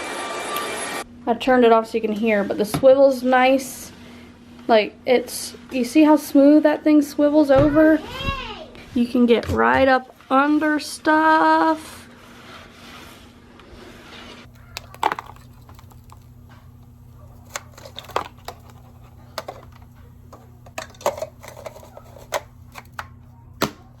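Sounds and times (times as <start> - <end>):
faint steady hum: 13.4 - 24.0.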